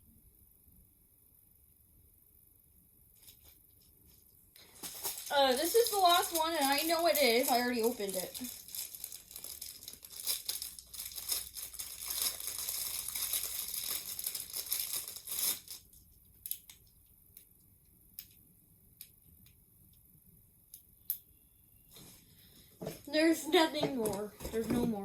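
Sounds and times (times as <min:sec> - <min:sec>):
plastic packaging crinkling: 0:04.6 - 0:16.8.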